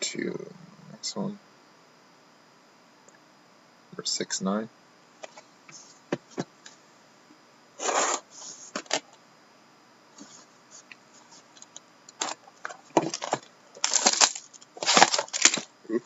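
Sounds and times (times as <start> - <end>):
foil wrapper crinkling and tearing: 13.0 - 15.7.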